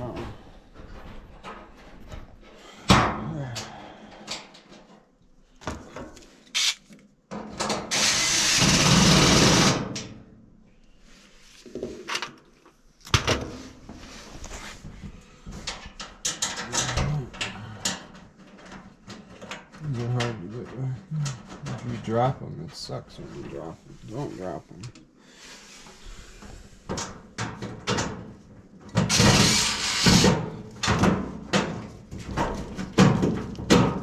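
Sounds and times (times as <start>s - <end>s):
power drill running: 6.6s - 6.8s, 7.9s - 9.9s, 29.1s - 30.4s.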